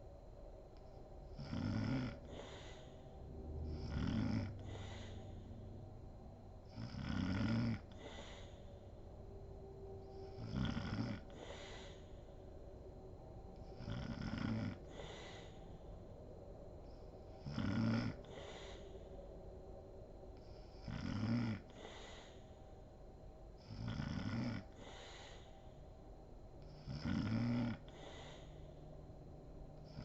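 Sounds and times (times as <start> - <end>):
woman snoring: 1.3 - 5.7, 6.6 - 8.8, 10.0 - 12.3, 13.6 - 15.6, 17.3 - 18.9, 20.5 - 22.5, 23.6 - 25.5, 26.6 - 28.6.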